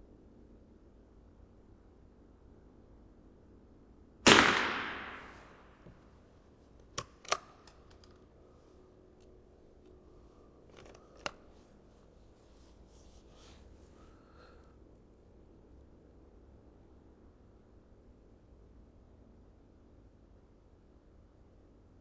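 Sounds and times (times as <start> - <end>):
rifle shot echoing: 4.2 - 5.8.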